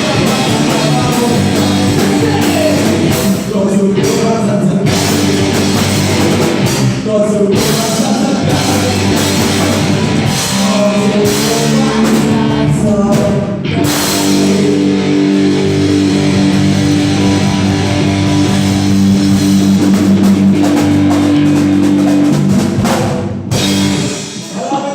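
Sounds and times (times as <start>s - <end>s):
person singing: 0.0s - 18.7s
live rock band playing: 0.0s - 24.9s.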